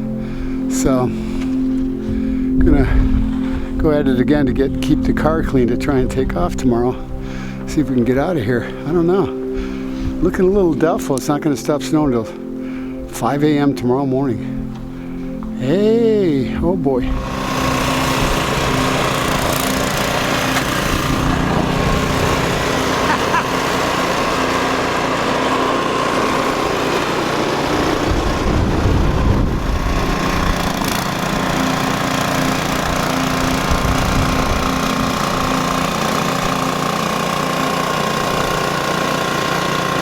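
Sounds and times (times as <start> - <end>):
small engine running: 17.0 - 40.0.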